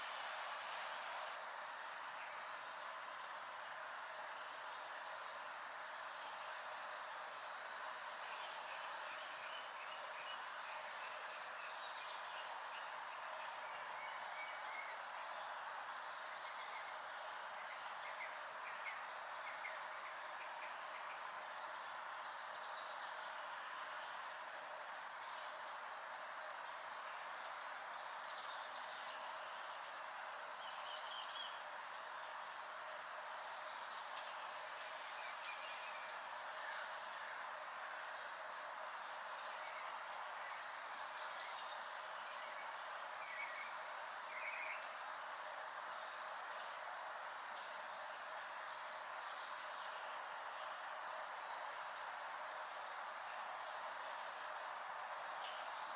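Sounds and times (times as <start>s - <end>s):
songbirds chirping: 0.0s - 55.9s
steady background hiss: 0.0s - 55.9s.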